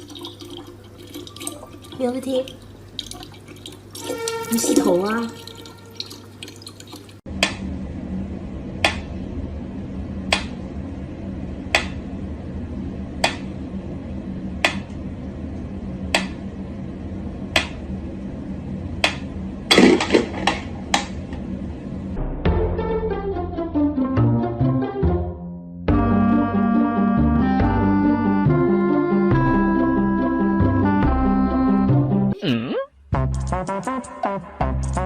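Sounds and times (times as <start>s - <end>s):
steady low hum: 7.2s - 22.6s.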